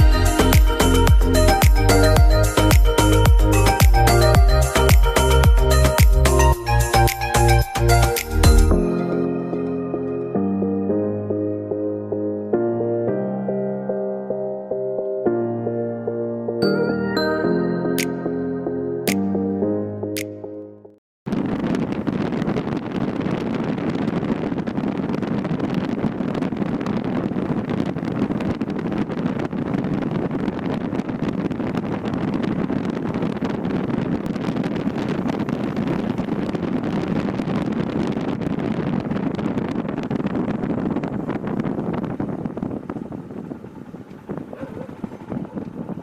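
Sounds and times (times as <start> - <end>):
wind rushing over microphone: 0.0 - 11.5, 21.3 - 46.0.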